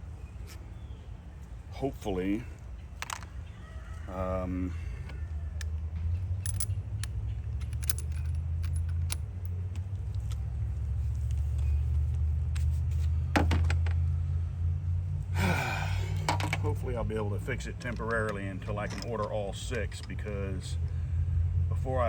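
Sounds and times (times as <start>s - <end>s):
steady low hum: 0.0s - 22.0s
metal parts and tools clinking: 3.0s - 3.3s, 5.6s - 12.1s, 16.2s - 16.8s, 17.4s - 20.5s.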